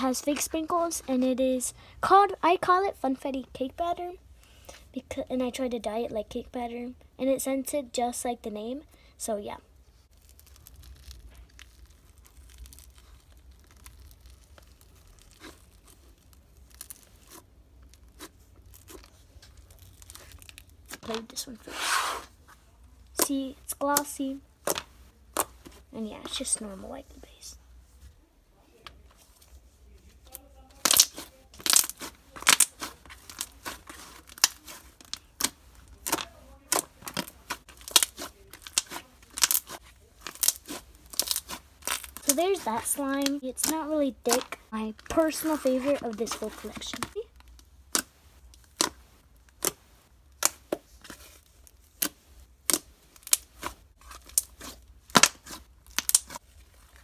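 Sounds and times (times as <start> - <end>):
slime crackling and popping: 10.0 - 21.4, 30.2 - 57.0
slime clicking and popping: 54.3 - 56.4.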